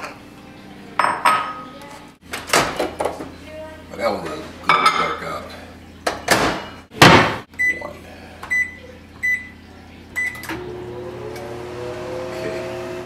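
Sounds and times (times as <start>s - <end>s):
microwave keypad beeps: 7.6s - 7.9s, 8.5s - 9.6s, 10.2s - 10.5s
microwave oven humming: 7.6s - 13.0s.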